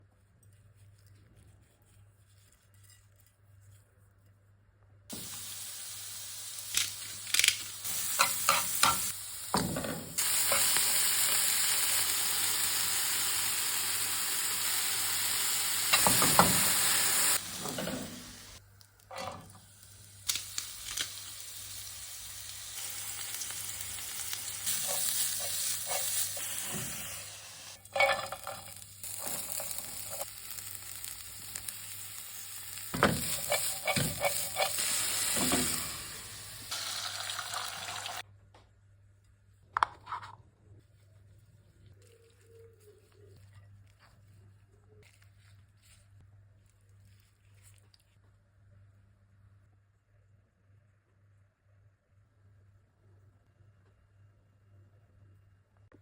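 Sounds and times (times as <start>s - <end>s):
food sizzling in a pan: 5.1s - 38.2s
utensil scraping a pan: 24.6s - 30.3s, 33.0s - 35.8s.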